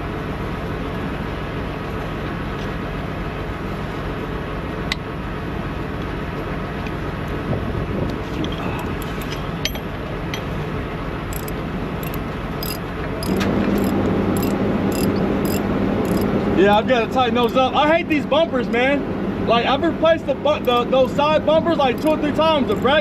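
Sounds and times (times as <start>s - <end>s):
engine idling hum: 0.0s - 23.0s
sharp clicks: 11.3s - 16.3s, 20.6s - 20.9s, 22.0s - 23.0s.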